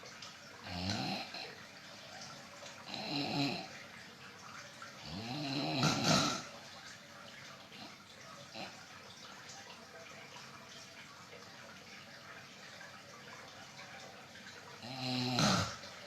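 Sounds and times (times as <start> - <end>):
person snoring: 0.7 - 1.5, 2.9 - 3.7, 5.1 - 6.4, 14.8 - 15.8.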